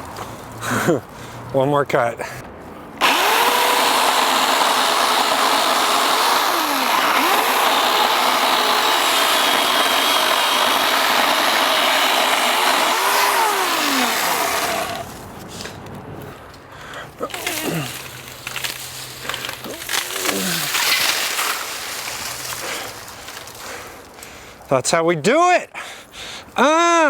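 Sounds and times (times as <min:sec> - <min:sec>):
chainsaw cutting wood: 0:03.0 - 0:15.1, 0:17.2 - 0:23.8.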